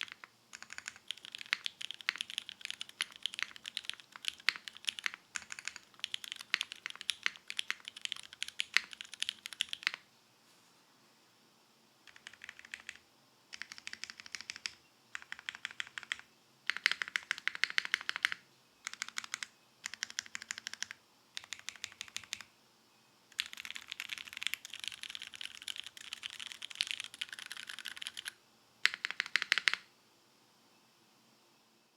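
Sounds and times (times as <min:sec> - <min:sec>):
mechanical keyboard typing: 0:00.0 - 0:10.0, 0:12.1 - 0:22.5, 0:23.3 - 0:29.9.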